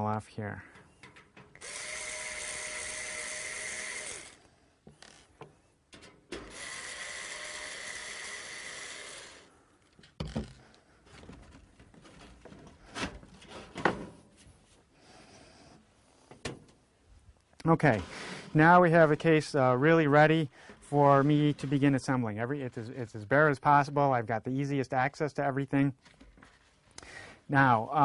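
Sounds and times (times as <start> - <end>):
power screwdriver running: 1.6 - 4.5, 6.4 - 9.5.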